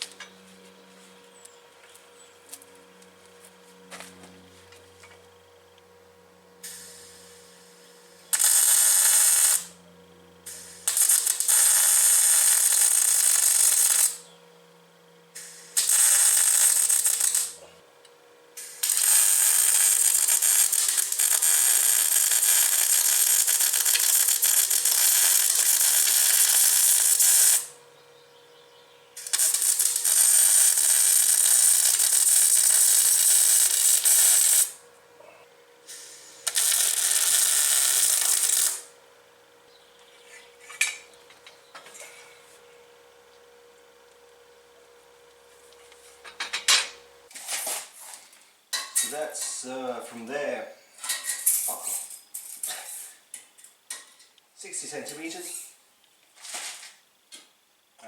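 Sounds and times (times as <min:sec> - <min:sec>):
faint steady hum: 0:00.0 - 0:58.0
electric welding crackling hiss: 0:06.6 - 0:14.2, 0:15.3 - 0:17.7, 0:18.6 - 0:27.8, 0:29.2 - 0:34.8, 0:35.8 - 0:39.0, 0:51.3 - 0:53.2, 0:54.6 - 0:55.8.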